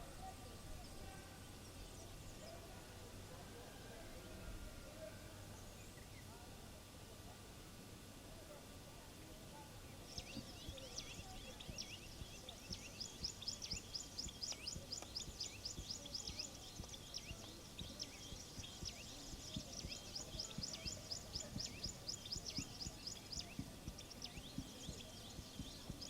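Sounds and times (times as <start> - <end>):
small birds chirping: 0.0 - 3.3, 9.1 - 26.0.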